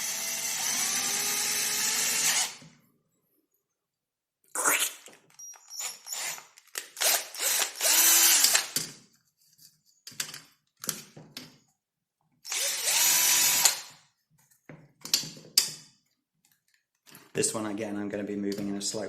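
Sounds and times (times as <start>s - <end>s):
small power drill whirring: 0.0s - 2.6s, 5.4s - 8.8s, 12.4s - 14.0s.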